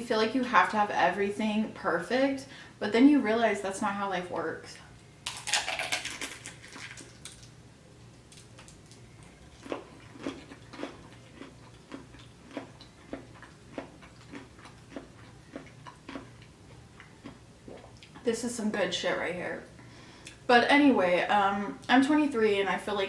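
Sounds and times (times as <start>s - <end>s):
person chewing food: 8.3s - 18.2s.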